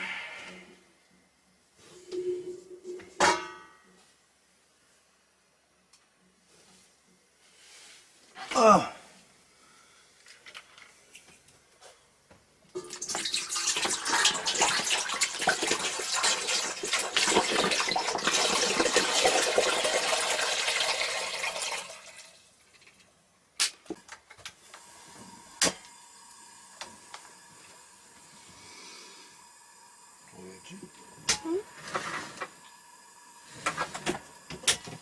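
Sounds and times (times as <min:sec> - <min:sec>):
tap water running into sink: 0:12.8 - 0:22.4.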